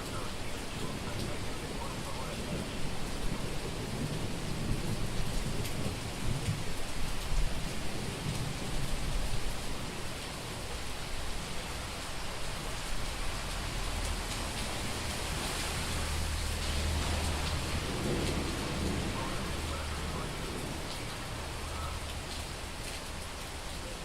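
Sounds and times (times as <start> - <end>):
heavy rain on street: 0.0 - 24.0
rolling thunder: 16.8 - 21.6.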